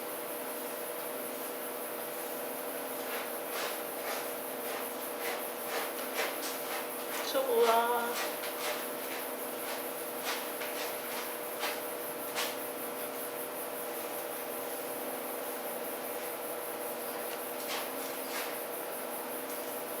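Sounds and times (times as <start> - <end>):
brush rubbing through cat fur: 2.9 - 12.7, 17.1 - 18.9.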